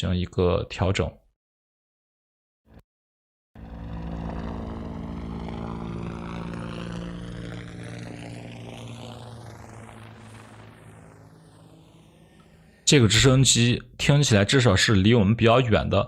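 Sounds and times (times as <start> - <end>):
helicopter rotor drone: 3.6 - 15.0.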